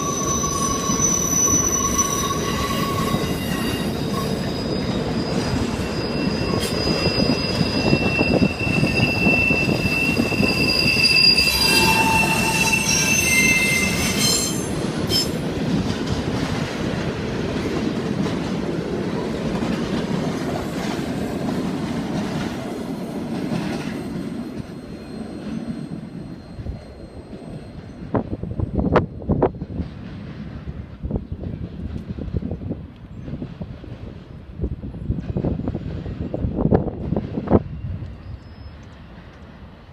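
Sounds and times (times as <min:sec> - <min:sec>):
train wheels squealing: 0:00.0 - 0:15.5, 0:23.4 - 0:30.3, 0:37.3 - 0:39.5
rail cars rumbling and clattering: 0:00.0 - 0:39.9.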